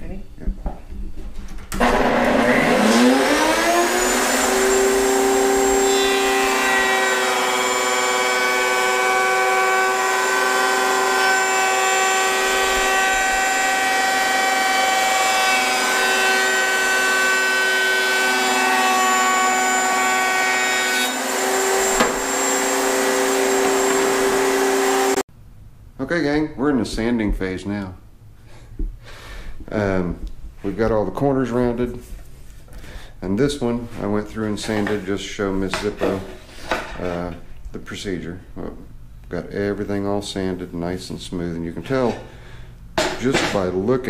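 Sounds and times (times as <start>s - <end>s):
orbital sander motor whine: 1.8s - 20.2s, 21.1s - 25.2s.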